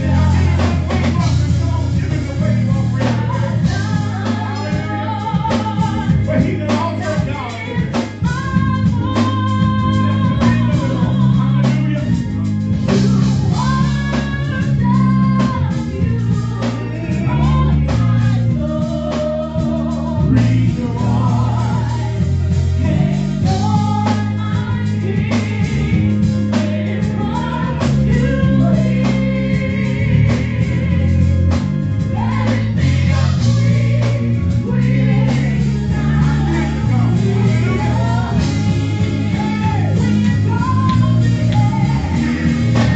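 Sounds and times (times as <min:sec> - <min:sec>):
bass guitar and beat: 0:00.0 - 0:42.9
gospel singing: 0:00.0 - 0:42.9.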